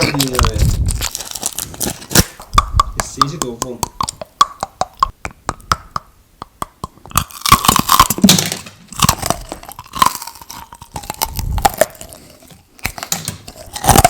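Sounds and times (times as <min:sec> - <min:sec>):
mouth clicks: 0:02.1 - 0:08.3
wet crunching chewing: 0:06.7 - 0:08.3, 0:08.9 - 0:14.0.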